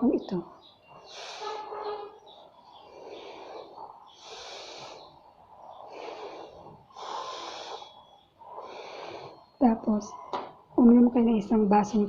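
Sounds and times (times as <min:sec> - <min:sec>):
person breathing deeply: 0:01.0 - 0:01.9, 0:02.7 - 0:09.6.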